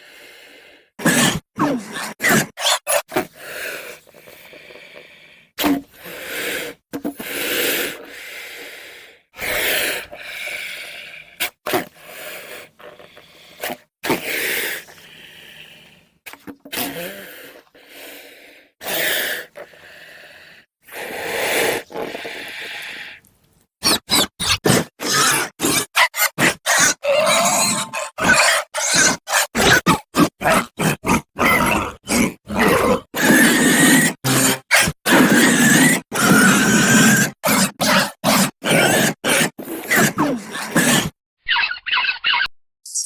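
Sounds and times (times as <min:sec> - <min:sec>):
creature hissing calls: 0:23.8 - 0:42.5.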